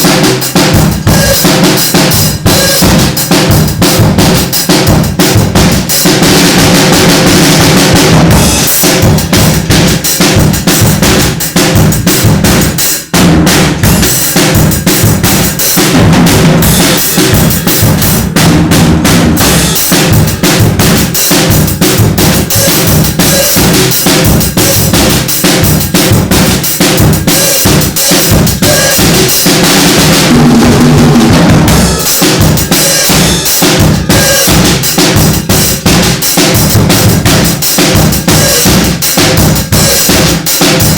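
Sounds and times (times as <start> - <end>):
drum kit groove: 0.0 - 40.9
cymbals washing: 31.7 - 35.5.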